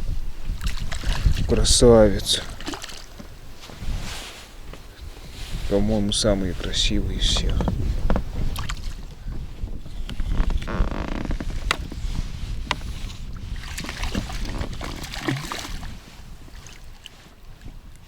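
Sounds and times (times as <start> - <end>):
buzzy rustle: 3.0 - 17.6
knocks and clicks in a boat: 6.4 - 18.0.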